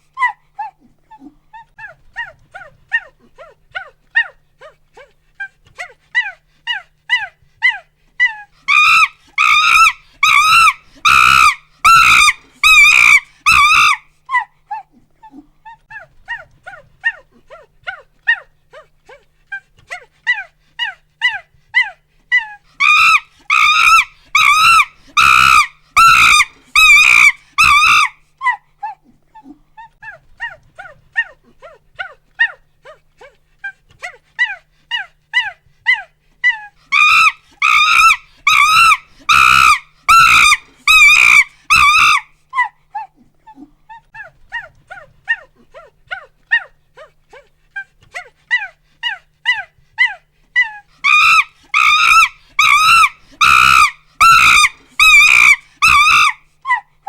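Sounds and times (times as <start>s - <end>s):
monkey hooting and screaming: 6.2s - 14.5s, 20.3s - 28.6s, 34.4s - 43.1s, 48.2s - 56.9s.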